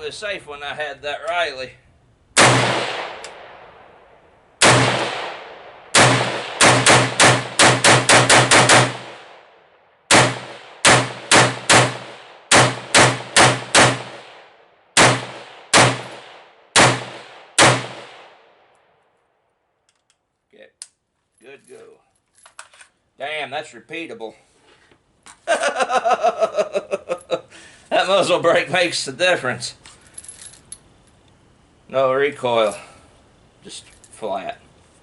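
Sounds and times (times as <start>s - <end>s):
rifle shots with echo: 2.4s - 18.7s.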